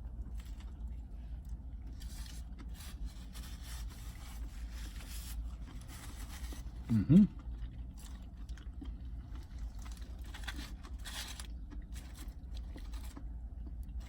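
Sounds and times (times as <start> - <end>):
low rumble inside car: 0.0 - 14.0
person chewing: 0.0 - 14.0
wrapper rustling and crackling: 1.9 - 6.9, 9.3 - 13.2.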